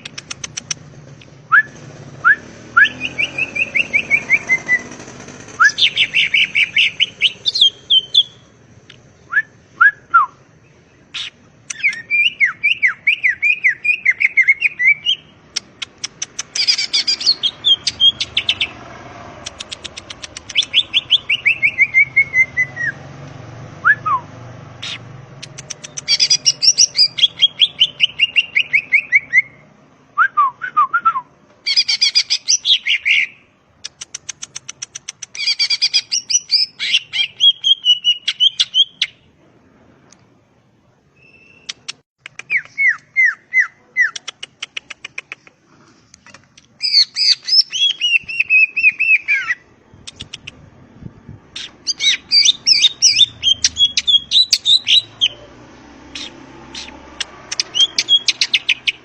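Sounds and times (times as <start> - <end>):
bird singing chattering runs: 3.0 - 8.4.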